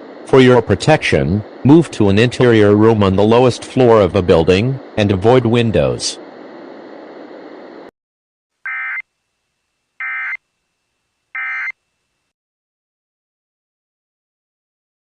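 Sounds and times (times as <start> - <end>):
steady hiss: 0.0 - 7.9
warbling digital data tones: 11.4 - 11.7.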